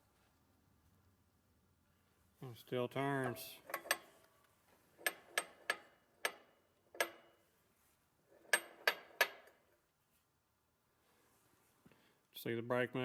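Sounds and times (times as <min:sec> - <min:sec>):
chain hoist ratchet clicking: 0:03.6 - 0:04.2, 0:05.0 - 0:07.4, 0:08.4 - 0:09.6.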